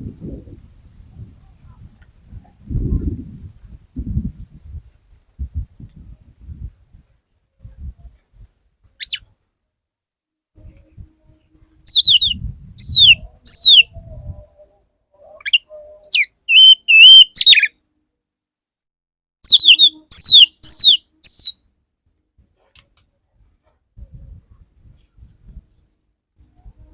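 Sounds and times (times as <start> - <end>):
bird singing whistles: 9.0 - 9.2, 11.9 - 14.0, 15.2 - 17.7, 19.4 - 21.6.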